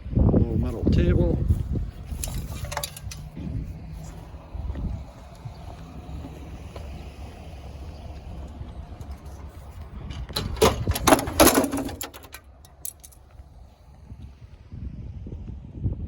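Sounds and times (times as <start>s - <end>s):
low rumble: 0.0s - 12.0s
scrap metal clanking: 1.6s - 4.4s, 5.0s - 13.2s.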